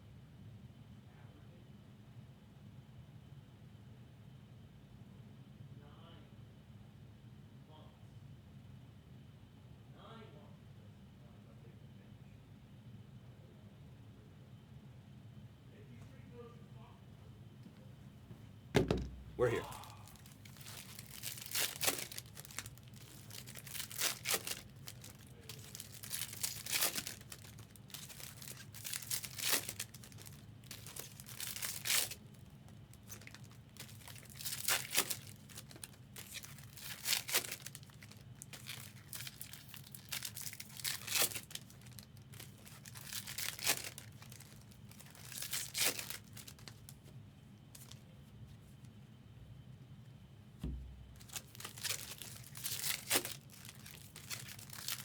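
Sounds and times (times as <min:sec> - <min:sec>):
low steady hum: 0:15.5 - 0:55.0
foil packs tearing open: 0:19.4 - 0:46.9, 0:51.1 - 0:55.0.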